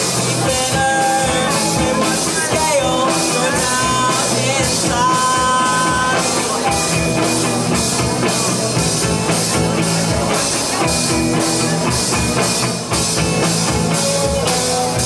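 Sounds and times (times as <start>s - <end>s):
bass guitar: 0.0s - 15.0s
drum kit with cymbal hits: 0.0s - 15.0s
electric guitar: 0.0s - 15.0s.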